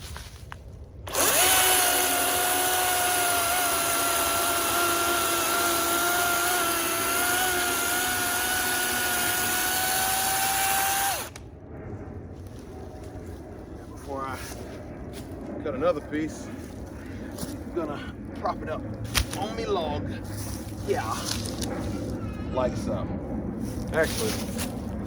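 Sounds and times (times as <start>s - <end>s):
electric chainsaw whine: 1.1s - 11.4s.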